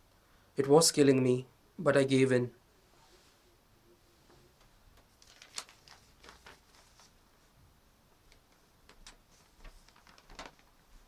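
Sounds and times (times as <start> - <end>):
low hiss: 0.0 - 11.0
rustling: 4.2 - 7.6, 8.2 - 11.0.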